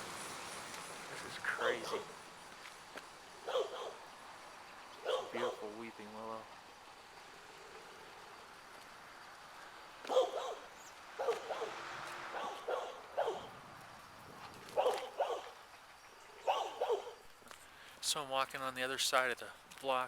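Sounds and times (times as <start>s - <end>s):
dog barking: 1.6s - 2.2s, 3.4s - 4.1s, 5.0s - 5.7s, 10.0s - 13.6s, 14.7s - 15.6s, 16.4s - 17.2s.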